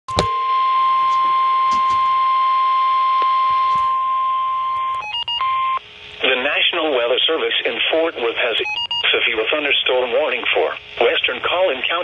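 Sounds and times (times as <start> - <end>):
steady high alarm beep: 0.1 - 5.8.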